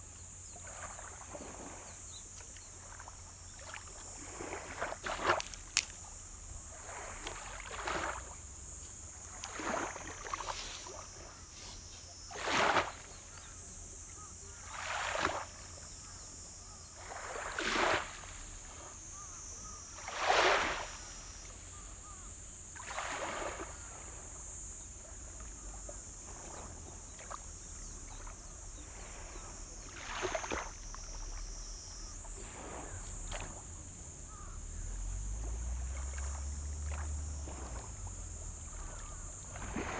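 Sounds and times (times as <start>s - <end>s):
small waves lapping on shore: 0.0s - 39.9s
steady high-pitched hiss: 0.0s - 39.9s.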